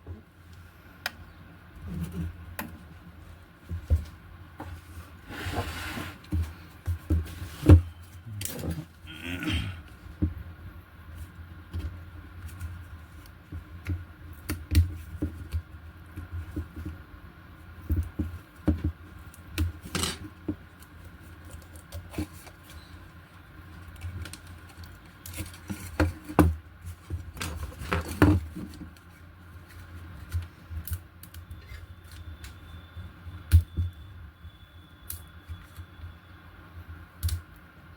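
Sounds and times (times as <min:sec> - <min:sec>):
steady low hum: 0:00.0 - 0:25.6.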